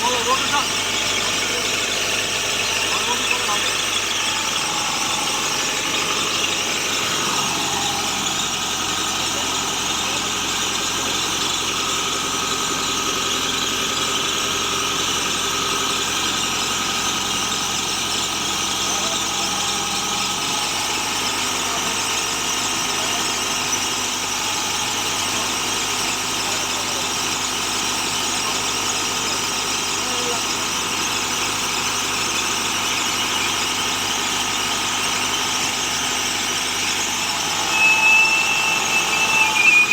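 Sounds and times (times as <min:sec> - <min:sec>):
high whine: 0:00.0 - 0:12.3, 0:32.7 - 0:39.9
drilling rig engine running: 0:00.0 - 0:39.9.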